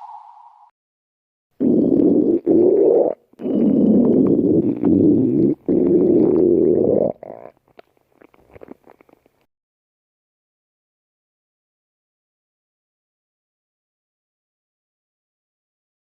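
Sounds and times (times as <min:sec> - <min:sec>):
stomach growling: 0:01.6 - 0:09.5.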